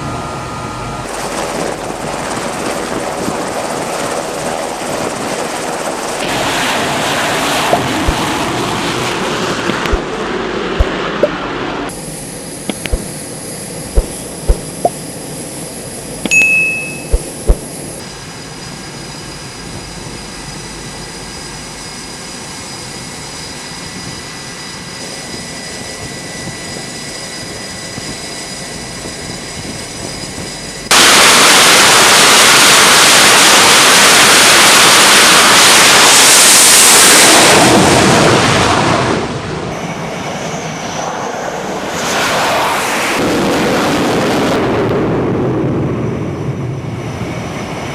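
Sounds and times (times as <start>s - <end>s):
whine of running jet engines: 0.0s - 47.9s
loud rush of jet noise: 6.2s - 11.9s, 30.9s - 47.5s
sharp clicks: 9.7s - 10.1s, 12.7s - 13.1s, 14.0s - 15.0s, 16.3s - 17.7s.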